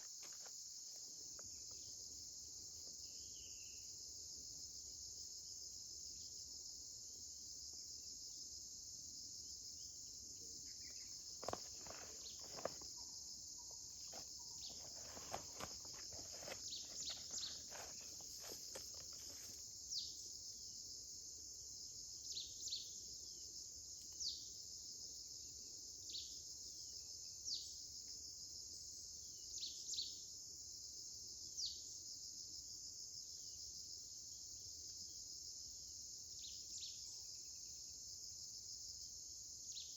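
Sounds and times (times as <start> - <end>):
crickets chirping: 0.0 - 39.9
knocks and rustles: 14.0 - 19.6.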